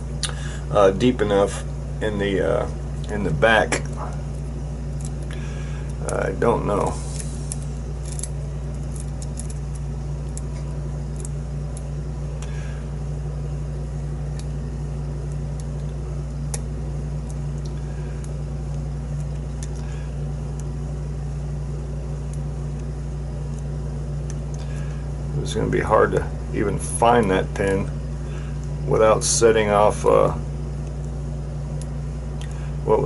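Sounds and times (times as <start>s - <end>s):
steady low hum: 0.0s - 33.0s
lock pick clicking and scraping: 7.2s - 11.9s.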